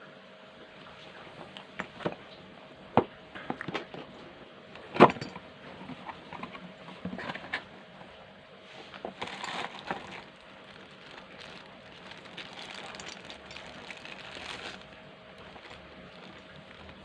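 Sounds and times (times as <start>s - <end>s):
faint steady hum: 0.0s - 17.0s
clicks and knocks of small parts: 9.1s - 17.0s.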